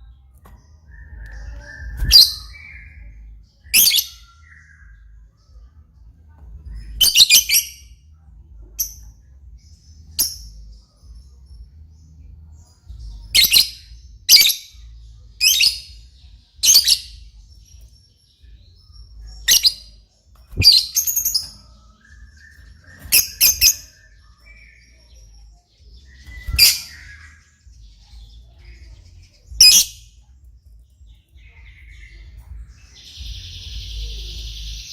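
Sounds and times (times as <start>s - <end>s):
lovebird shrill chirps: 19.4s - 19.9s.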